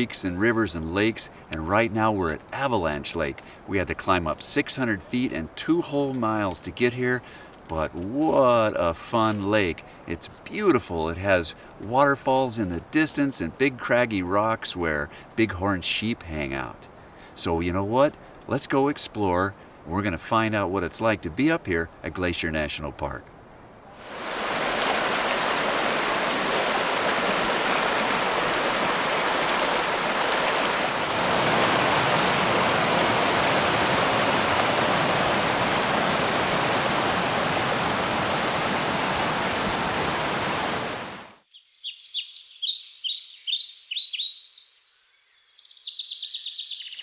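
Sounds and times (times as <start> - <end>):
birds chirping: 23.3 - 47.0
creek rushing over rocks: 24.0 - 41.4.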